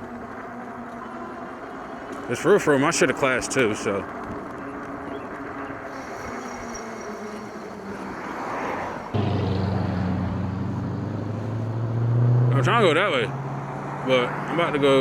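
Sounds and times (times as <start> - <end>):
street traffic: 0.0 - 15.0
low vehicle engine hum: 8.9 - 15.0.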